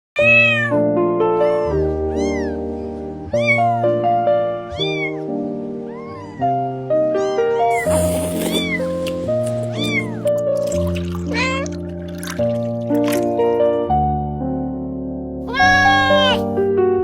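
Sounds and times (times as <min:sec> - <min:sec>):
cat meowing: 0:00.2 - 0:00.8, 0:02.1 - 0:02.6, 0:07.2 - 0:10.2, 0:15.5 - 0:16.4.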